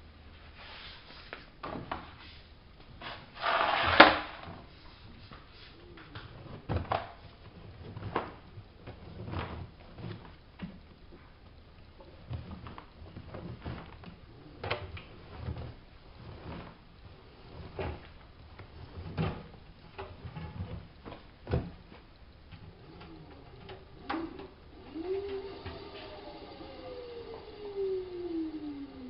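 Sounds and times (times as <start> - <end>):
laundry tumbling in washing machine: 2.8 - 29.0
washing machine motor tone: 3.0 - 4.8, 5.8 - 29.0.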